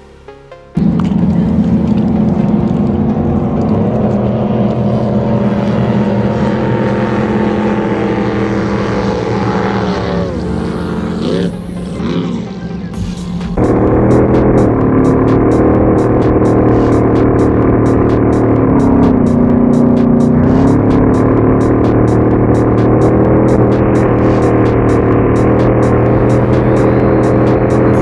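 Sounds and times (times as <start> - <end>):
jet boat engine running hard: 0.8 - 12.0.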